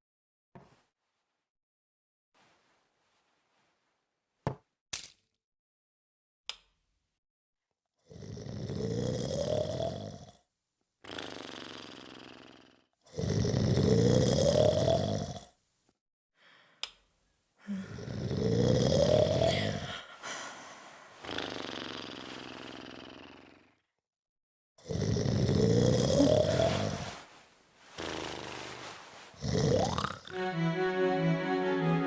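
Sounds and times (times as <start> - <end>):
person snoring: 8.1 - 10.3, 11.0 - 12.4, 13.1 - 15.4, 17.6 - 23.8, 24.8 - 27.3, 27.9 - 30.4
quiet breath: 16.4 - 16.9, 17.6 - 18.3, 19.0 - 21.4, 26.2 - 29.4.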